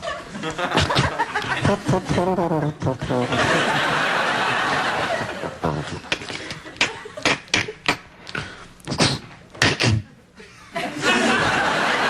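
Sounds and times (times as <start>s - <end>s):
man making vocal clicks and pops: 6.1s - 10.0s.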